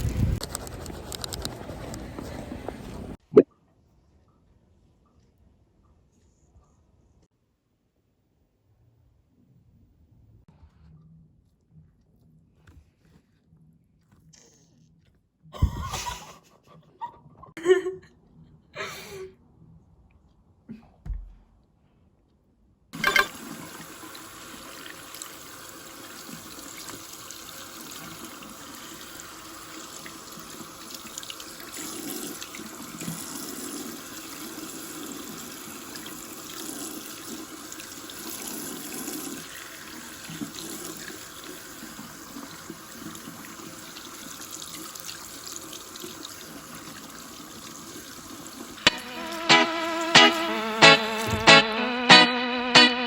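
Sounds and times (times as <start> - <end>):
tap water running into sink: 23.0 - 49.3.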